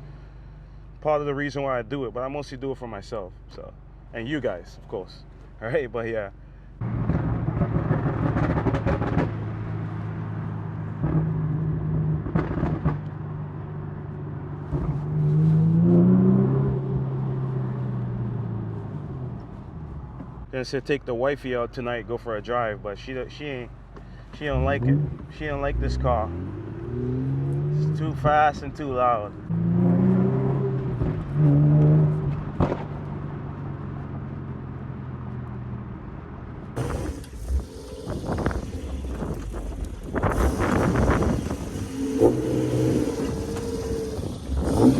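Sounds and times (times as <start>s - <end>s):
car engine droning: 23.6s - 44.9s
car engine exhaust note: 36.8s - 44.9s.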